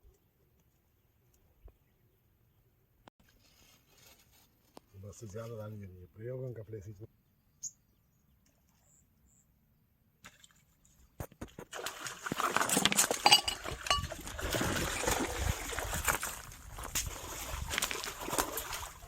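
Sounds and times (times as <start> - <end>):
water splashing and sloshing: 10.2 - 19.0.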